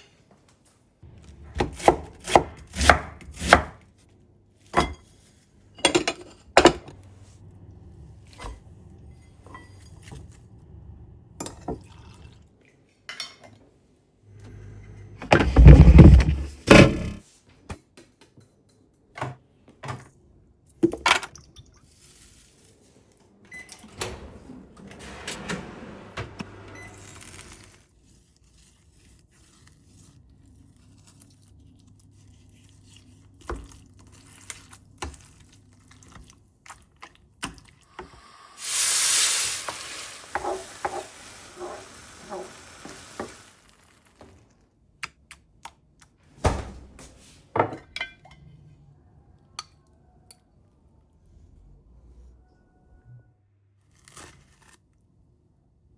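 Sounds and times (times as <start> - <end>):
dishes and utensils clinking: 4.8 - 6.9
rush of running liquid: 38.4 - 44.3.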